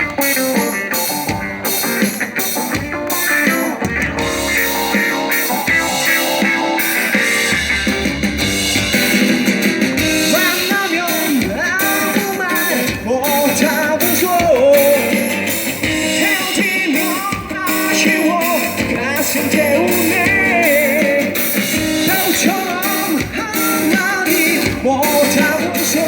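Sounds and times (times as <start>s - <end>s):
guitar: 0.0s - 26.0s
lead melody bending in pitch: 3.7s - 9.0s.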